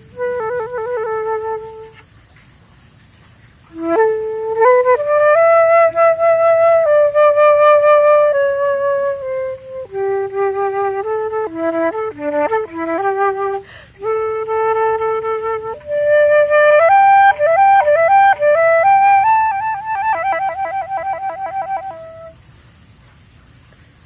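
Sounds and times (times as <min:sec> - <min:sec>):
solo flute melody: 0:00.0 - 0:02.1, 0:03.6 - 0:22.4.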